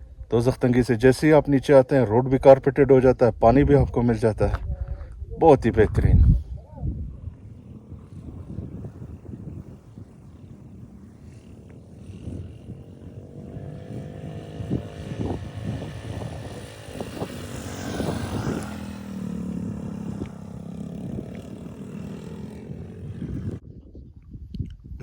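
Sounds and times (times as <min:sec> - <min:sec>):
wind noise: 0:02.3 - 0:25.0
road noise: 0:05.5 - 0:23.6
motorcycle engine accelerating: 0:05.7 - 0:23.6.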